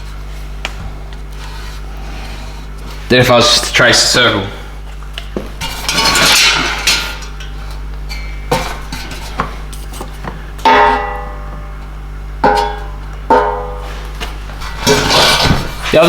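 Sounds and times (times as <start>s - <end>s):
low electrical hum: 0.0s - 16.0s
metal rods clinking: 5.6s - 7.5s.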